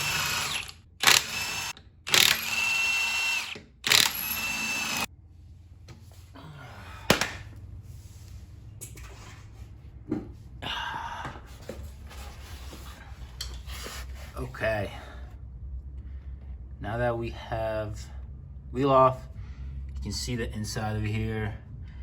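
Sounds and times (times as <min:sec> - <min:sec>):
impact wrench bursts: 0:00.0 - 0:05.1.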